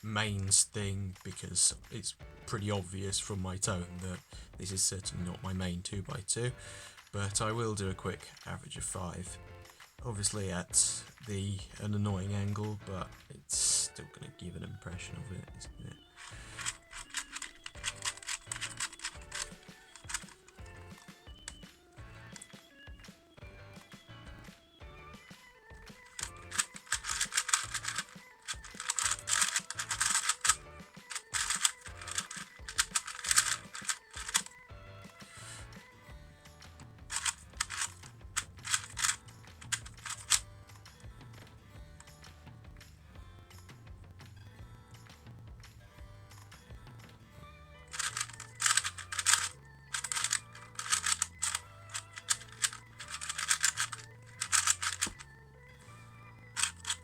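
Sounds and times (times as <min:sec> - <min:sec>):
background music: 0:00.0 - 0:57.0
plastic puzzle cube clicking: 0:16.2 - 0:21.6, 0:26.0 - 0:34.6, 0:37.1 - 0:40.5, 0:47.9 - 0:55.3, 0:56.4 - 0:57.0.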